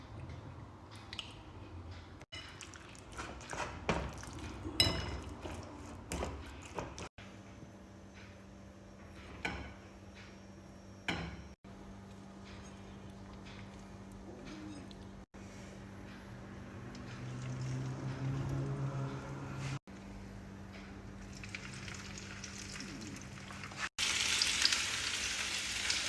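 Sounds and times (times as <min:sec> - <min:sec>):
dishes and utensils clinking: 0:04.4 - 0:05.6.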